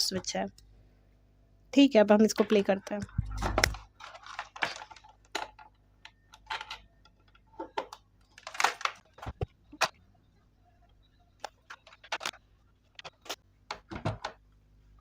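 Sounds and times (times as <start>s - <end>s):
plastic keyboard clicks and knocks: 2.3s - 10.0s, 11.4s - 14.5s.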